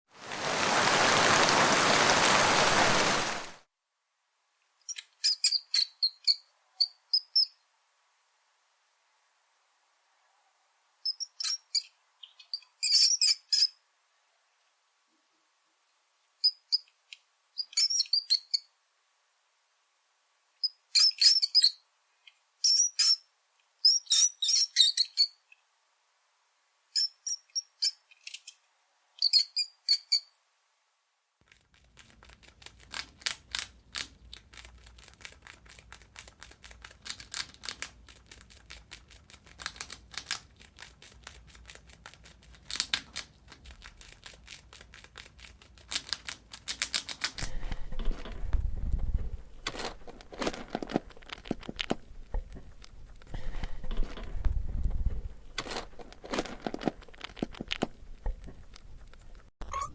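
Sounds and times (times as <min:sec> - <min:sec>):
mouse squeaking: 0:04.9 - 0:07.5, 0:11.1 - 0:13.8, 0:17.6 - 0:18.7, 0:22.6 - 0:25.4, 0:29.2 - 0:30.3, 0:59.6 - 0:59.9
rapid dry clicking and scratching: 0:31.4 - 0:47.5.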